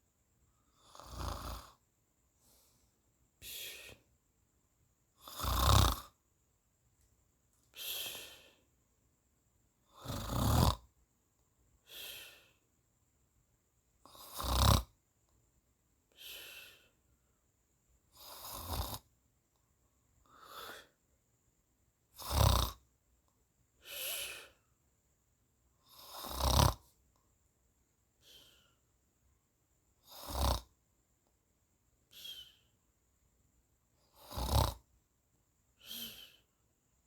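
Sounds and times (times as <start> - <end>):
loud deep rasping snore: 0.8 - 1.8, 5.2 - 6.2, 10.0 - 10.9, 14.1 - 14.9, 18.2 - 19.0, 22.2 - 22.8, 25.9 - 26.8, 30.0 - 30.7, 34.1 - 34.8
soft breath out: 35.8 - 36.5.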